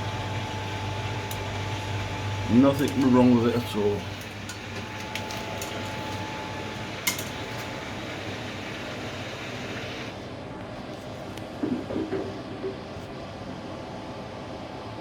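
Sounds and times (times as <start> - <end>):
washer dryer drum turning: 0.0 - 8.9.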